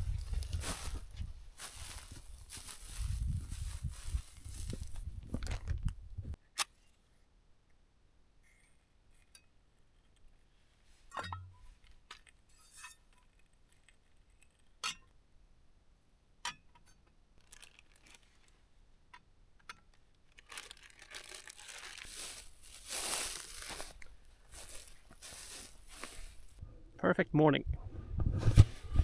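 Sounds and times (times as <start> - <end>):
crinkling and rustling: 0.0 - 6.0, 17.4 - 18.6, 20.2 - 26.6.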